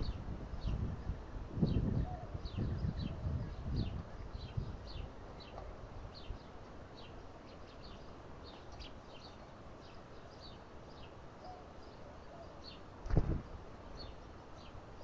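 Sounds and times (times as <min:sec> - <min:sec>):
small birds chirping: 0:00.0 - 0:15.0
dull thump: 0:13.1 - 0:13.5.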